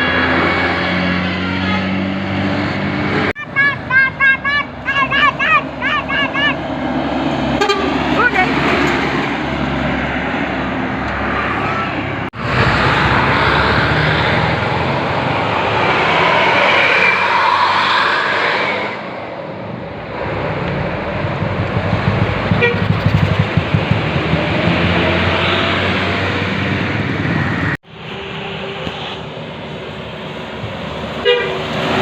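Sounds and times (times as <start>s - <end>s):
bus engine rumble: 0.0s - 18.0s, 18.9s - 32.0s
loud road traffic: 0.0s - 32.0s
bus air horns: 7.6s - 8.5s, 22.5s - 23.0s, 31.2s - 31.8s.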